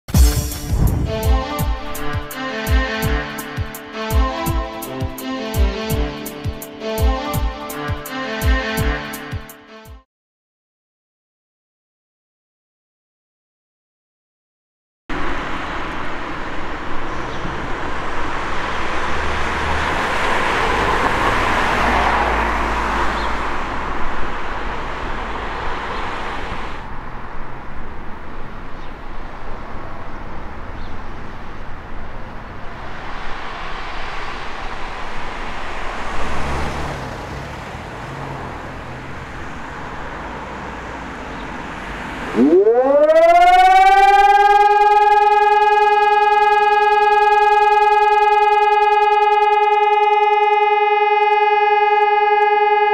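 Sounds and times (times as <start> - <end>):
vehicles passing: 0.2 - 9.3, 15.1 - 52.9
electronic siren rising tone: 42.2 - 52.9.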